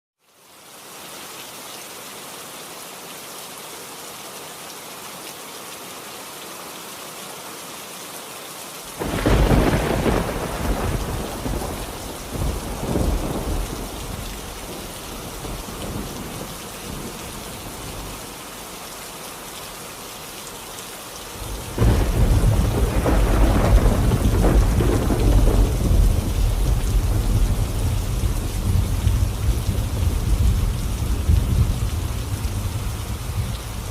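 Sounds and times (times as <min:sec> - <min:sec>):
rain hiss: 0:00.2 - 0:33.9
thunder rumbling: 0:09.0 - 0:17.1, 0:21.4 - 0:33.9.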